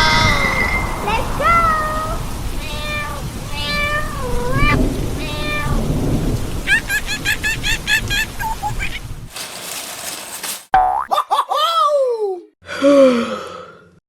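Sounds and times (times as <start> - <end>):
low rumbling noise: 0.0 - 6.7
monkey chirps: 6.7 - 9.0
young monkey squealing: 6.7 - 9.0.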